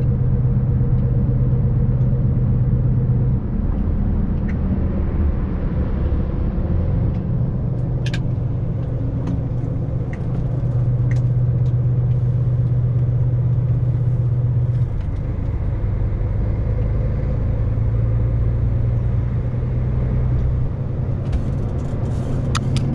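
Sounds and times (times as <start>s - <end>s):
road noise: 0.0s - 22.9s
vehicle engine hum inside cab: 0.0s - 22.9s
faint rattles and clicks: 7.1s - 15.6s, 21.2s - 22.9s.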